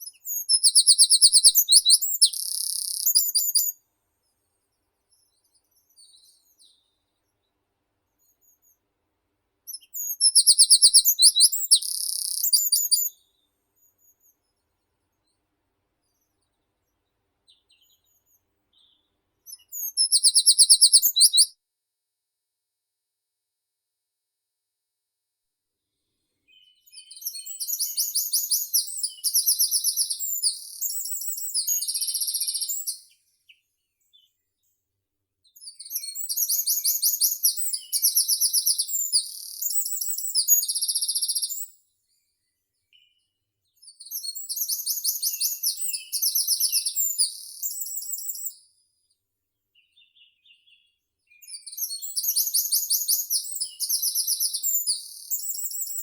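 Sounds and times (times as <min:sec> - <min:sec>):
songbird trilling: 0:00.4 - 0:03.7, 0:10.0 - 0:13.1, 0:19.7 - 0:21.5.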